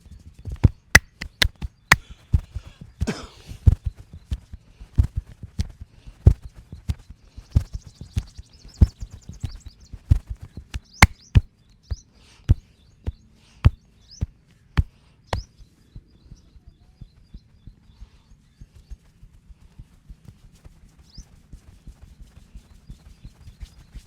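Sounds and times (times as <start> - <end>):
hands slapping on a head: 0.6 - 2.6, 7.6 - 11.5.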